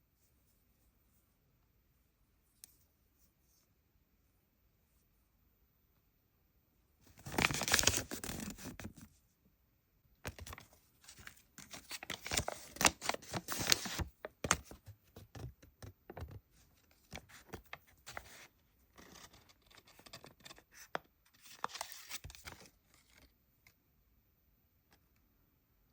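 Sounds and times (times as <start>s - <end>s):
packaging being torn and crinkled: 7.2s - 8.8s, 11.2s - 14.1s.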